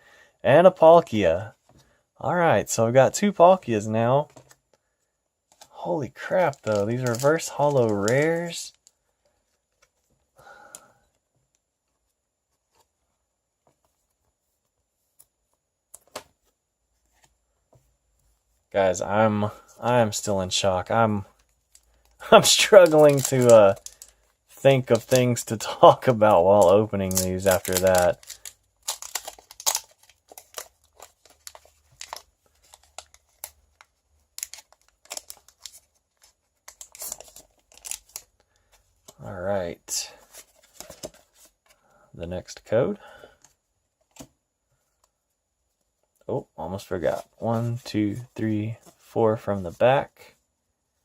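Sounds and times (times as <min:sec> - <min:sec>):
soft card rustle: 0:03.2 - 0:41.9, 0:42.6 - 0:51.0
foil wrapper crinkling: 0:06.2 - 0:08.7, 0:21.8 - 0:38.3.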